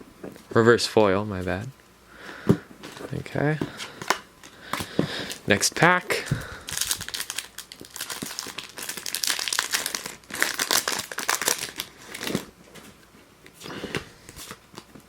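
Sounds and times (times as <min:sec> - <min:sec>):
foil wrapper crinkling: 0:06.1 - 0:12.5.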